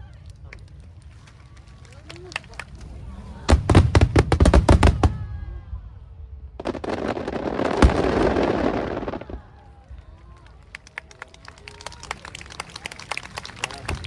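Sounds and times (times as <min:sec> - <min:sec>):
fireworks crackling and hissing: 0:00.0 - 0:14.0
fireworks bangs: 0:00.4 - 0:10.0.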